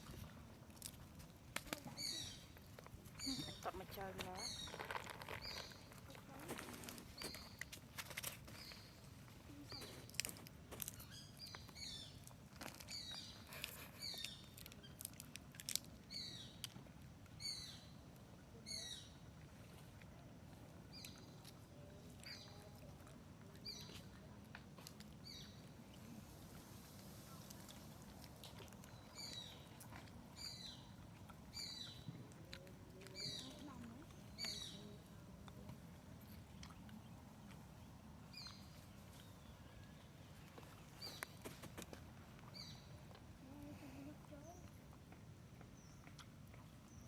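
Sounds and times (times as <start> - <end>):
bird chirping: 3.2 - 6.0.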